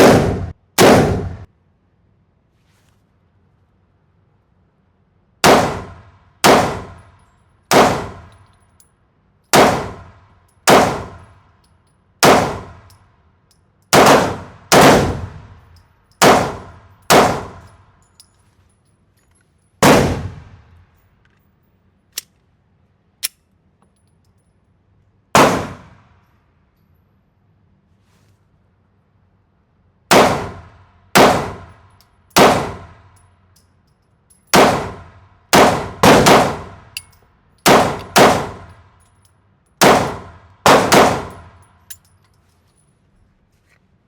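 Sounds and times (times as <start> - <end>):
gunshots with short echo: 0.0 - 1.5, 5.4 - 7.0, 7.7 - 8.3, 9.6 - 10.1, 10.7 - 11.2, 12.2 - 12.8, 14.0 - 15.5, 16.2 - 17.6, 19.8 - 20.7, 25.4 - 26.0, 32.4 - 32.9, 34.6 - 36.8, 37.7 - 38.7, 39.8 - 41.4.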